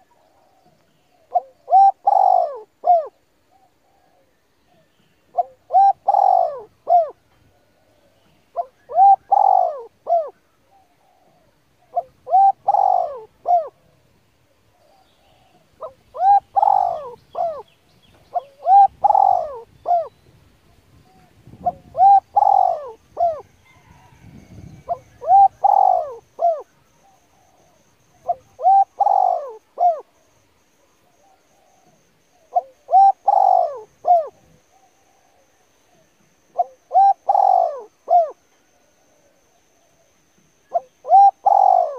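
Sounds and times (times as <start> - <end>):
bird cooing: 0.0 - 41.9.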